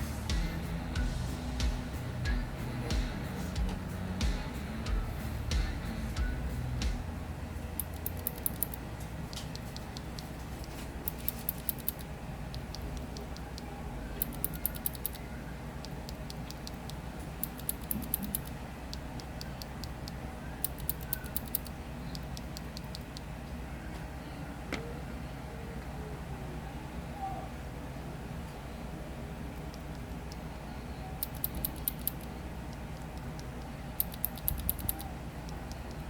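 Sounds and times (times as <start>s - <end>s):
steady low hum: 0.0s - 36.0s
mechanical keyboard clicks: 7.8s - 15.2s, 15.8s - 23.3s, 31.2s - 36.0s.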